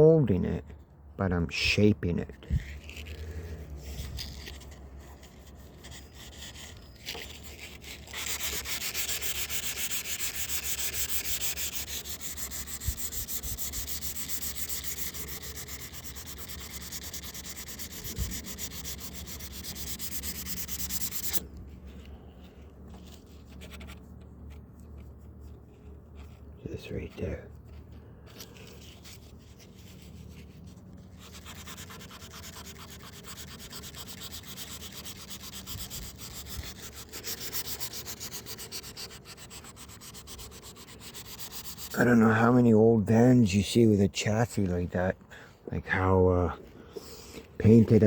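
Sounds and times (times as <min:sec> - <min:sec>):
sandpaper rubbing back and forth: 0:02.5 - 0:22.1, 0:28.4 - 0:42.9
quiet handling sounds: 0:21.4 - 0:31.2.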